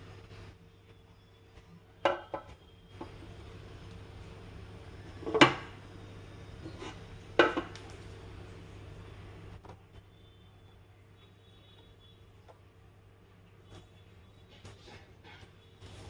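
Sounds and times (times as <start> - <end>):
faint steady hum: 0.0 - 16.0
kitchenware knocking and clattering: 2.1 - 2.5, 5.2 - 5.7, 7.4 - 7.8.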